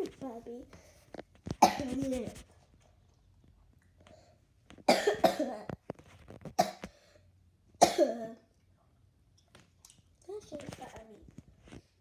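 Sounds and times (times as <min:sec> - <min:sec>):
loud coughs: 0:04.9 - 0:05.6, 0:07.8 - 0:08.4.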